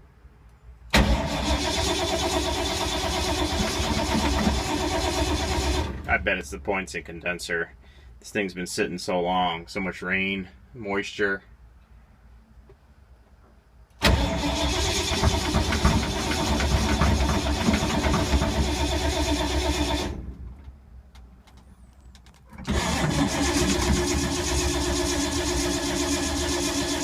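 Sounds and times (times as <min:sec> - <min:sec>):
starter cranking engine: 0:00.9 - 0:06.1, 0:14.0 - 0:20.3, 0:22.6 - 0:27.0.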